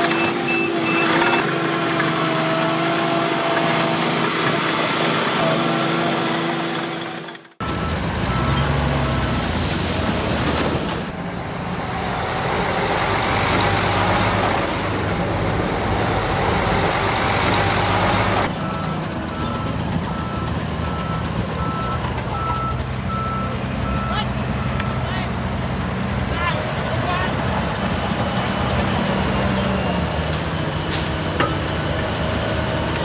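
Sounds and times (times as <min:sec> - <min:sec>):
heavy machinery diesel engines: 0:00.0 - 0:33.0
reversing alarm beeping: 0:17.9 - 0:25.1.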